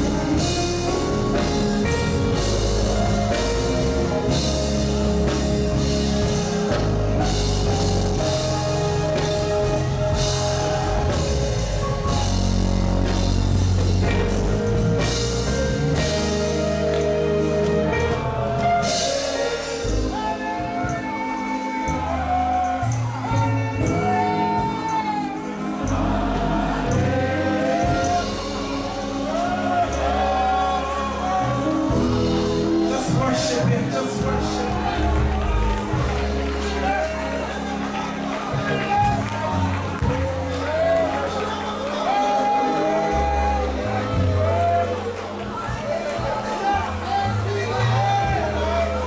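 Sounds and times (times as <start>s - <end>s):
live gospel band music: 0.0s - 49.0s.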